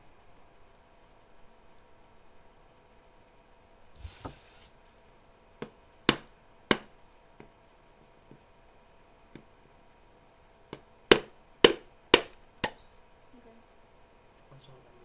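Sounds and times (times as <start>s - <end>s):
hammer knocking on coconut: 5.6s - 6.9s, 11.1s - 12.4s.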